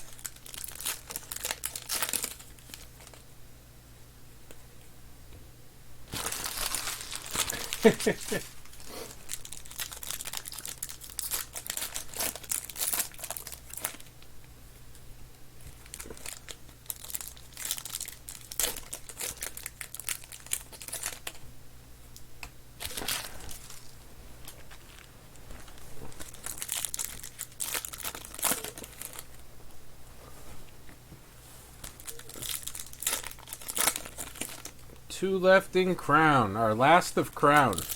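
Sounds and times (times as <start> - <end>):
foil wrappers crinkling and tearing: 0.0 - 3.2, 6.1 - 14.2, 15.7 - 21.4, 22.8 - 29.4, 31.8 - 35.0, 36.8 - 37.9.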